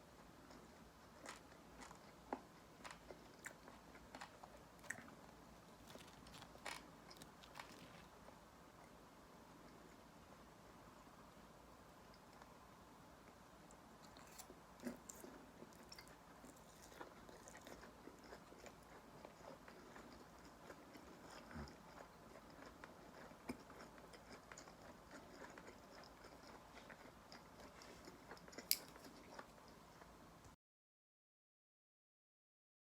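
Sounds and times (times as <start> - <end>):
chewing crunchy fried chicken: 0.3 - 8.4, 13.7 - 30.2.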